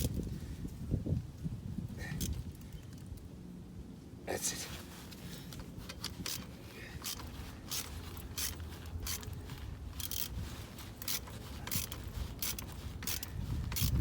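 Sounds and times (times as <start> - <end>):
metal parts scraping: 5.5 - 14.0.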